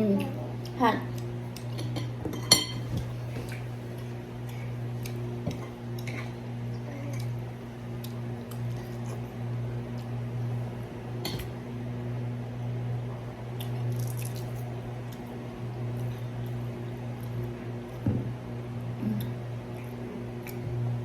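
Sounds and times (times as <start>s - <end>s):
steady low hum: 0.0s - 21.0s
cutlery clinking against plates: 1.6s - 3.0s.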